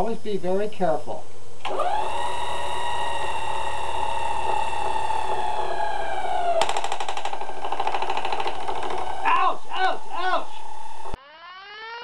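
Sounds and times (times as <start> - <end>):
high-pitched machine whine: 1.6 - 12.0
power hammer rattling blows: 3.8 - 10.2.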